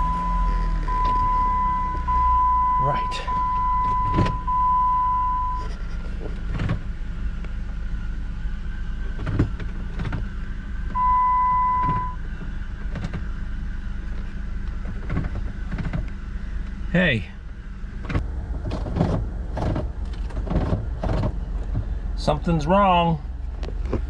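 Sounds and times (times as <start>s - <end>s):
long electronic beeps: 0.0s - 5.7s, 11.0s - 12.2s
car engine idling: 0.0s - 24.0s.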